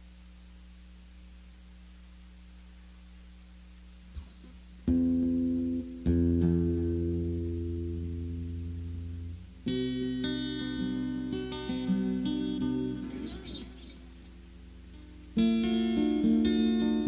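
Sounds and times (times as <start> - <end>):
amplified plucked-string music: 4.8 - 17.0.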